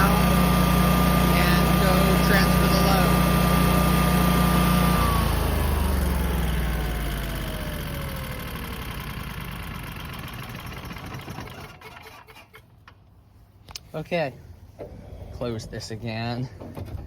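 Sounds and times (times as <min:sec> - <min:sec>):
generator engine spinning down: 0:00.0 - 0:12.1.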